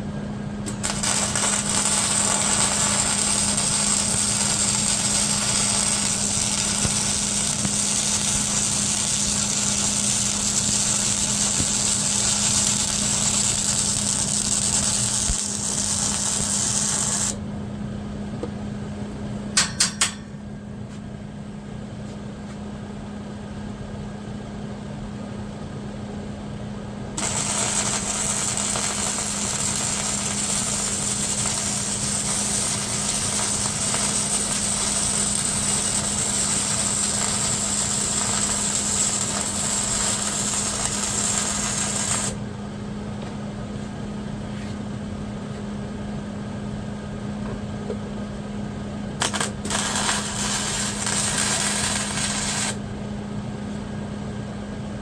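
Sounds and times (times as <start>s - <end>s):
steady low hum: 0.0s - 55.0s
welding arc crackling: 0.7s - 17.4s, 27.2s - 42.4s, 49.2s - 52.8s.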